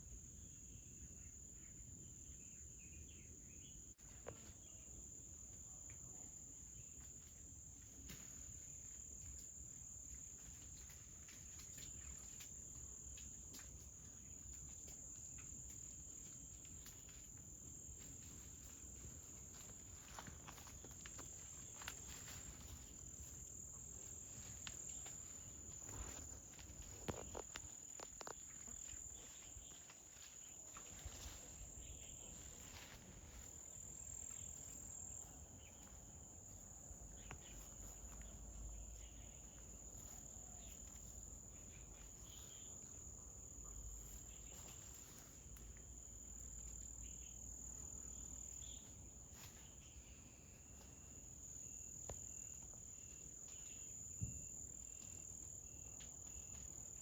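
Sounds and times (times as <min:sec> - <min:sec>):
insects trilling: 0:00.0 - 0:57.0.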